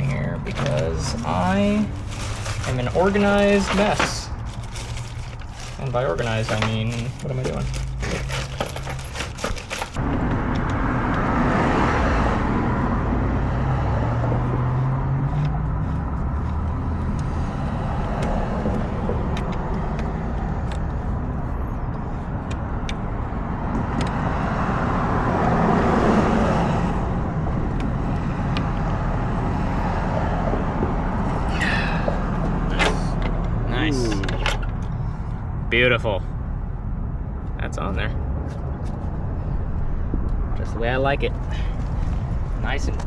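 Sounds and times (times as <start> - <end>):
traffic rumbling: 0.0 - 43.0
vehicles passing: 0.0 - 43.0.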